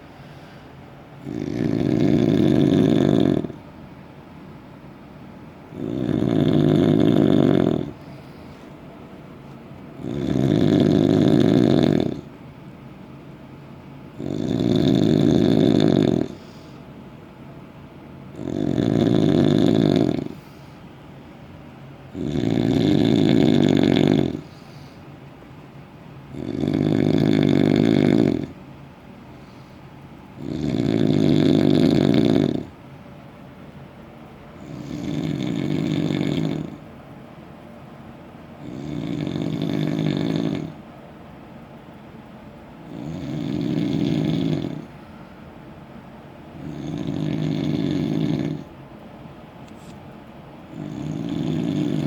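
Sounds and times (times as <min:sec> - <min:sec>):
quiet breaths: 0:00.0 - 0:03.7, 0:05.8 - 0:12.4, 0:14.2 - 0:17.0, 0:18.4 - 0:21.0, 0:22.2 - 0:25.3, 0:29.2 - 0:32.8, 0:50.7 - 0:52.0
loud snoring: 0:01.2 - 0:03.6, 0:05.7 - 0:08.0, 0:10.0 - 0:12.3, 0:14.2 - 0:16.6, 0:18.4 - 0:20.5, 0:22.1 - 0:24.8, 0:26.3 - 0:28.6, 0:30.4 - 0:32.7, 0:34.6 - 0:36.8, 0:38.6 - 0:40.8, 0:42.8 - 0:44.9, 0:46.6 - 0:48.7, 0:50.7 - 0:52.0.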